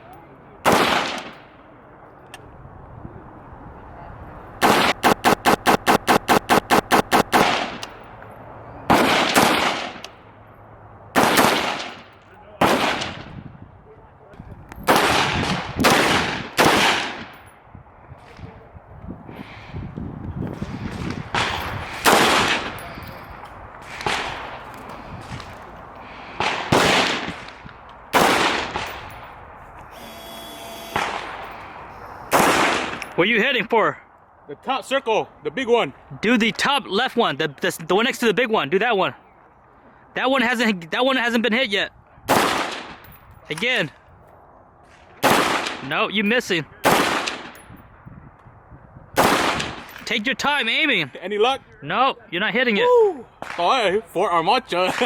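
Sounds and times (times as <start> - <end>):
gunshots with echo: 0.6 - 1.4, 4.6 - 7.8, 8.9 - 10.0, 11.2 - 13.3, 14.9 - 17.3, 20.9 - 22.8, 26.4 - 29.1, 31.0 - 31.4, 32.3 - 33.2, 42.3 - 43.0, 45.0 - 45.9, 46.8 - 47.6, 49.2 - 49.9.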